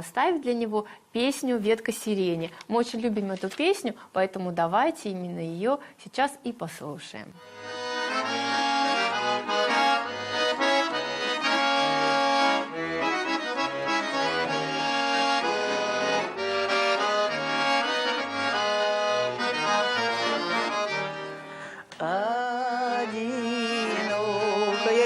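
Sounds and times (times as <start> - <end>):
accordion melody: 7.4 - 25.0.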